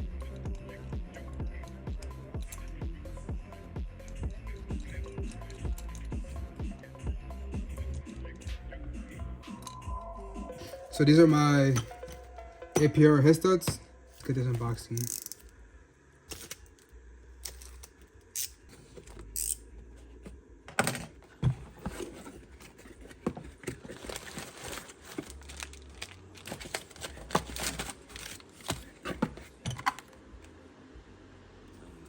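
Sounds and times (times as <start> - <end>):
parts clicking and knocking: 13.6 - 15.5, 16.3 - 30.2
packaging crinkling and tearing: 21.8 - 29.3.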